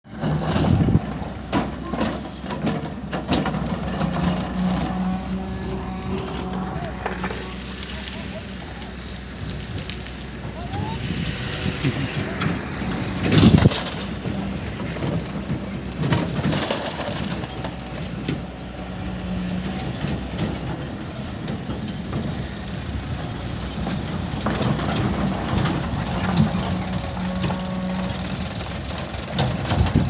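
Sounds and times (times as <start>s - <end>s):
excavator engine running: 0.1s - 30.0s.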